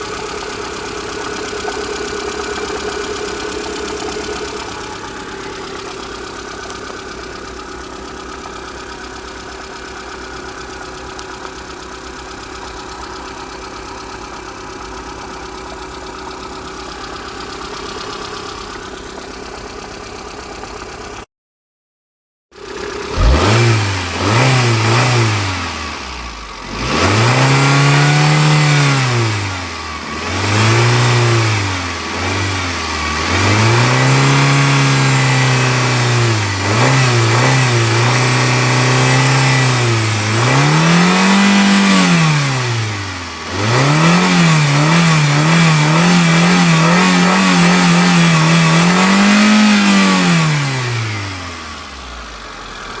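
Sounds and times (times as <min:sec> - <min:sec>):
car engine revving: 0:00.0 - 0:19.0, 0:22.6 - 0:53.0.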